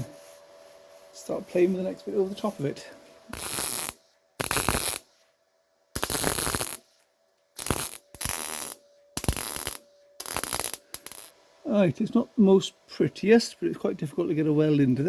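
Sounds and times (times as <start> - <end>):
welding crackle: 3.3 - 5.1, 6.0 - 7.0, 7.6 - 11.3.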